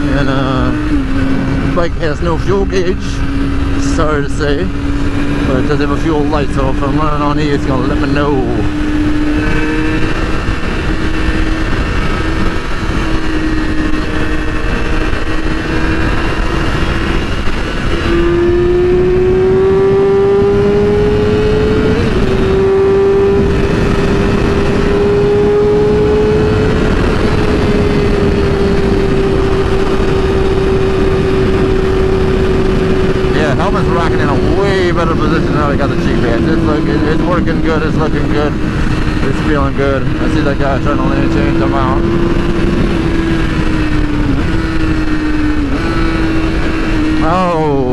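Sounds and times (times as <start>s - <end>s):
motorcycle engine running: 0.0s - 47.9s
wind noise: 0.0s - 47.9s.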